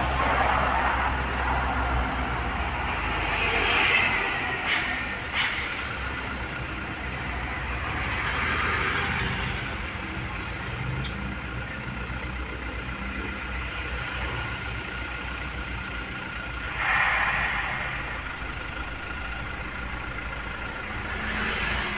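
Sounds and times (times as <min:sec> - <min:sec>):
bus engine running at low revs: 0:00.0 - 0:21.9
burst of hissing: 0:16.7 - 0:19.8.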